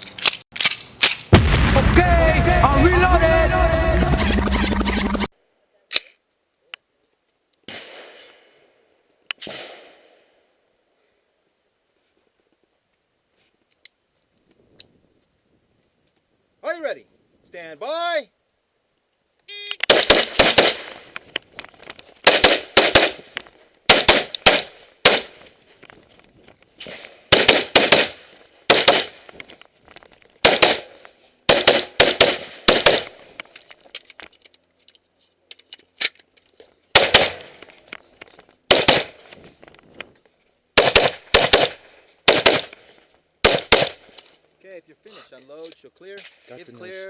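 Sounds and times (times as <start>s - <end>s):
rifle shots: 19.8s - 21.0s, 22.2s - 23.3s, 23.9s - 25.4s, 26.8s - 29.2s, 30.4s - 30.9s, 31.5s - 33.2s, 36.9s - 37.6s, 38.7s - 39.2s, 40.8s - 42.8s, 43.4s - 44.1s.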